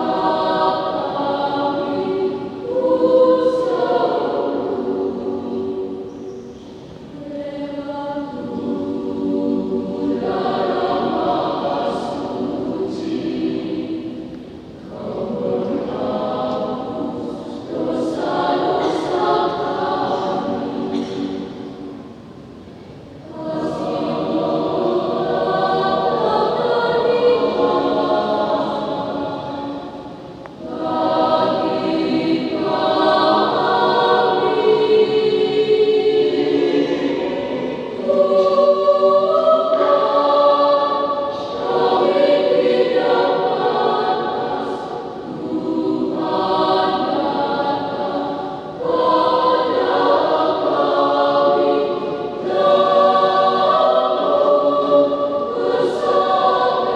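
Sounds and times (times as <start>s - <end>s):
choir singing a hymn: 0.0s - 56.9s.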